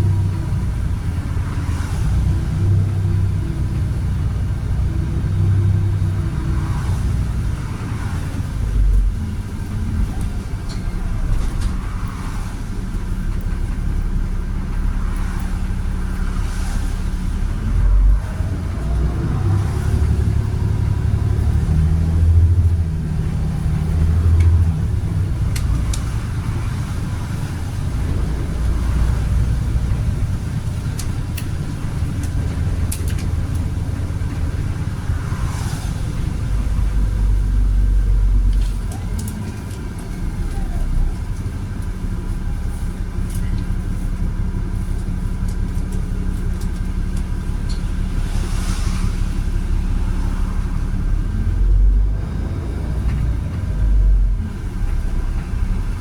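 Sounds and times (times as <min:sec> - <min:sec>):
bus diesel engine rumbling: 0:00.0 - 0:56.0.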